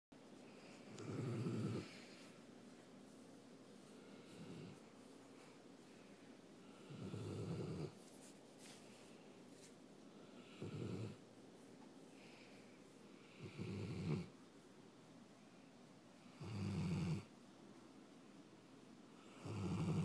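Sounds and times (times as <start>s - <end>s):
dog snoring: 0.9s - 2.2s, 4.0s - 4.8s, 6.7s - 8.0s, 10.3s - 11.2s, 13.2s - 14.4s, 16.3s - 17.3s, 19.2s - 20.0s.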